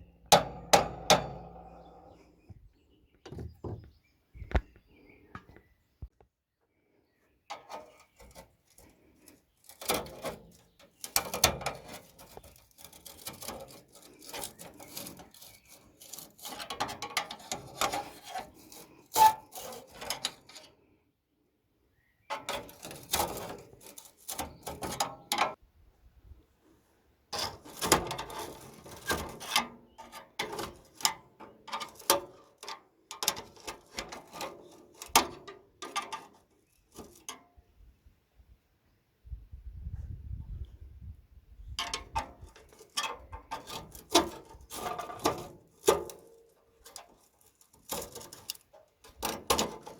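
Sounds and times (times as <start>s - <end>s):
hand tool scraping metal: 0.2s - 2.2s, 7.5s - 20.8s, 22.3s - 25.6s, 27.4s - 37.4s, 41.8s - 49.9s.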